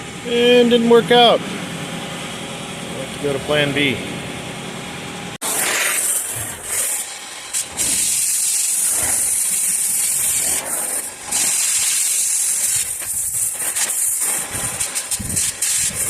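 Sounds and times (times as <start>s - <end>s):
cutting torch hissing: 5.4s - 16.0s.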